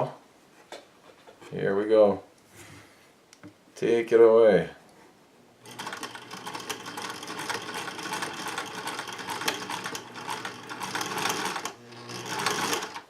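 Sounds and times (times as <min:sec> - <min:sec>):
sewing machine running: 0:05.6 - 0:13.0.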